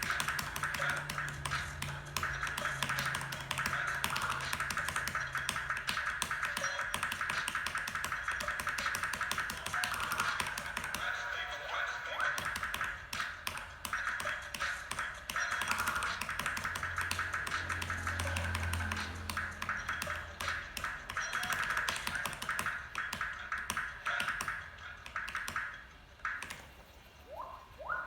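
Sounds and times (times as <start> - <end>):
mechanical keyboard typing: 0.0 - 11.2, 12.4 - 26.8
music: 0.0 - 28.0.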